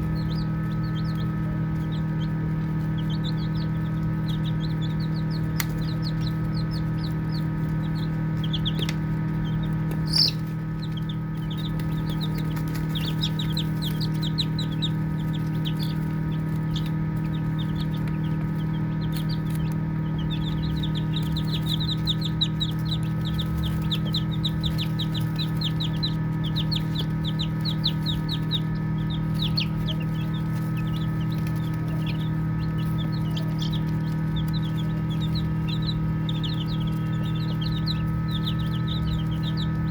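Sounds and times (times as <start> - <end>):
chicks peeping: 0.0 - 39.9
low hum: 0.0 - 39.9.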